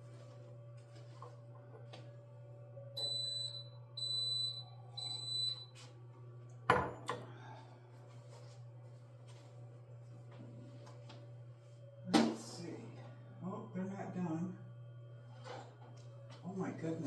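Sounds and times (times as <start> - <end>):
oven beeps: 3.0 - 5.8.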